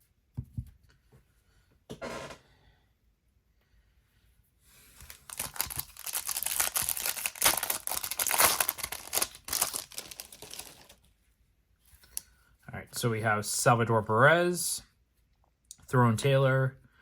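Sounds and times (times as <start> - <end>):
wrapper tearing and crinkling: 5.0 - 11.0.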